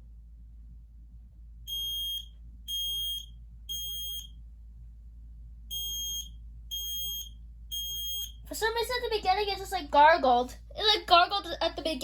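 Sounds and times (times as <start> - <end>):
smoke alarm beeps: 1.7 - 4.3, 5.7 - 8.4.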